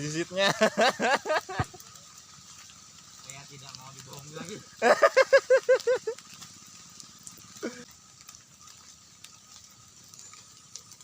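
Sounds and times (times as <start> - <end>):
man laughing: 0.4 - 1.8, 4.8 - 6.2.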